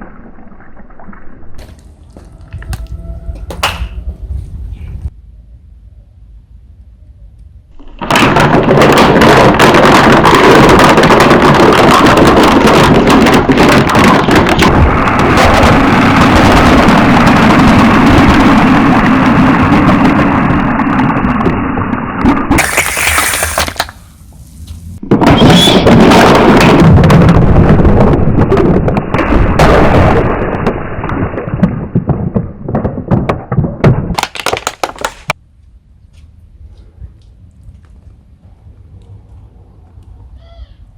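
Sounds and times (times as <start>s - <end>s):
objects crunching and cracking: 22.2s - 24.0s.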